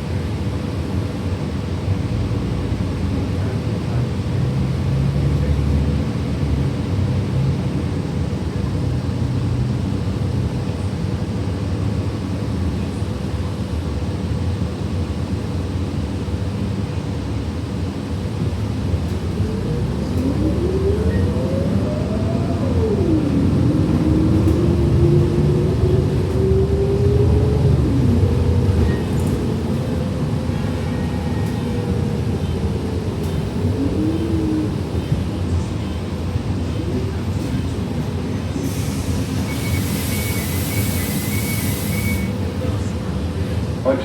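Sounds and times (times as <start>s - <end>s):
bus engine and road rumble: 0.0s - 44.0s
bus whine rising in pitch: 17.9s - 42.9s.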